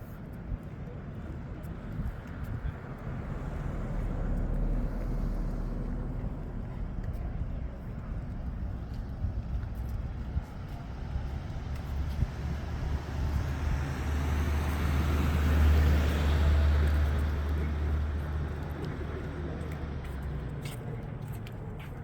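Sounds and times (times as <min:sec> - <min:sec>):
road vehicle passing by: 0:02.4 - 0:22.0.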